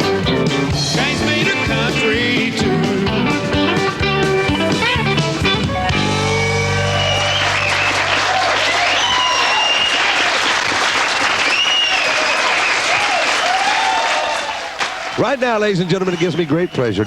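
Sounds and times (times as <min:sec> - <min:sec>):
audience applauding: 0:06.2 - 0:17.0.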